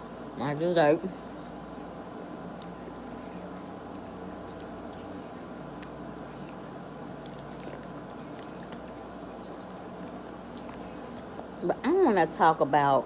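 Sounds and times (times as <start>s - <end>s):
background hum: 0.0s - 13.0s
wet mouth clicks chewing: 7.2s - 11.5s.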